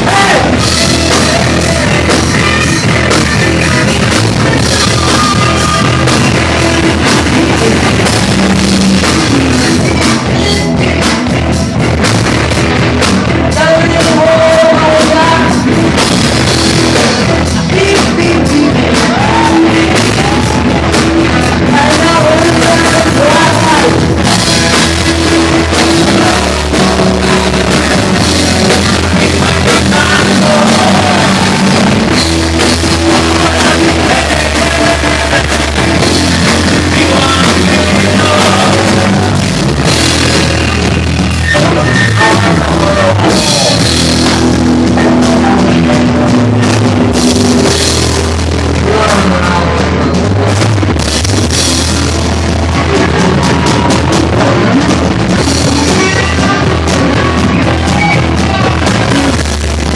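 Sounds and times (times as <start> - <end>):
drum kit: 0.0 - 59.9
person singing: 0.0 - 59.9
rock band playing live: 0.0 - 59.9.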